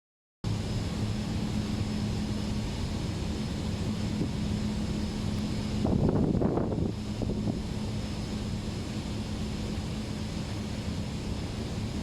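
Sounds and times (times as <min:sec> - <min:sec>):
engine drone: 0:00.4 - 0:12.0.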